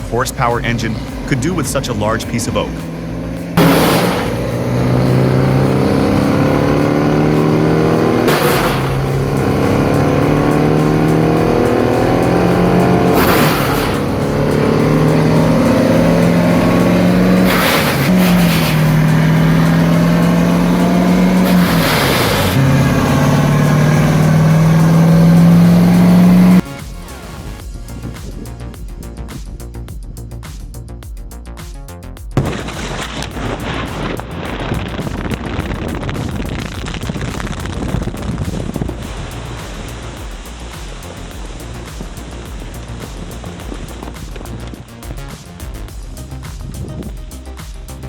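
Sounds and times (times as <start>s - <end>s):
wood chipper engine under load: 0.4s - 26.5s.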